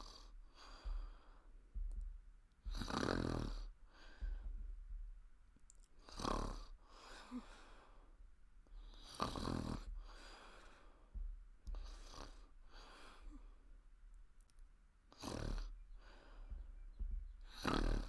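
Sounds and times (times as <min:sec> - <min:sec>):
woman snoring: 0:02.7 - 0:03.7, 0:06.0 - 0:07.6, 0:09.0 - 0:09.9, 0:15.2 - 0:15.8, 0:17.5 - 0:18.0.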